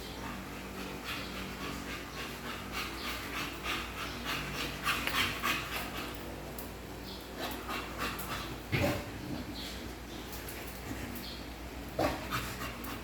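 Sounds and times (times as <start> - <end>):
dog panting: 0.0 - 6.3, 12.0 - 13.0.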